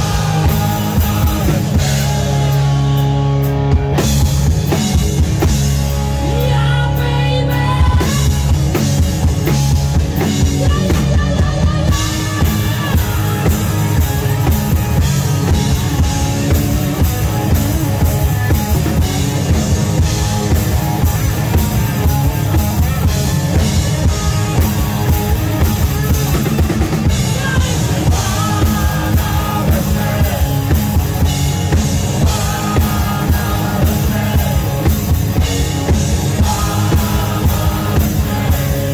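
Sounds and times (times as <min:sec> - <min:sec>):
rock music with drums and bass: 0:00.0 - 0:38.9.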